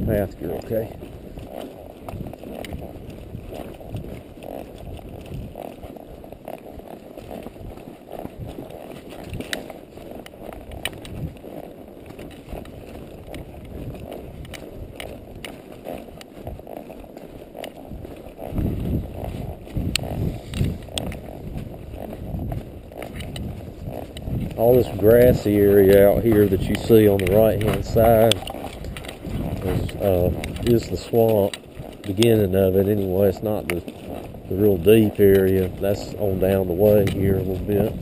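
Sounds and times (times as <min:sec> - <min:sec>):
horse hooves on trail: 0:00.0 - 0:38.0
tack clicking: 0:24.1 - 0:34.0.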